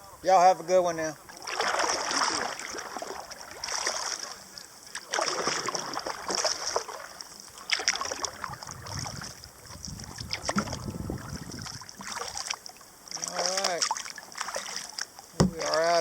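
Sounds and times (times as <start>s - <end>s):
kayak paddle strokes in water: 1.3s - 16.0s.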